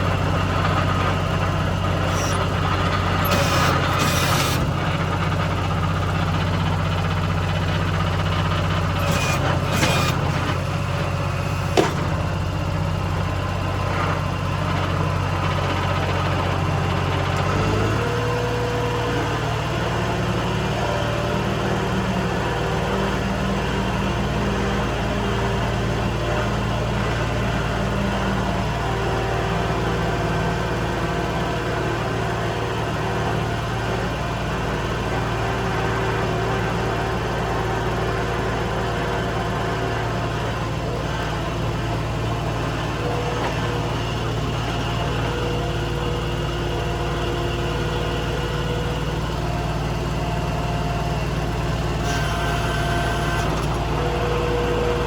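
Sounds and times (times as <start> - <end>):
skid steer engine running: 0.0 - 55.0.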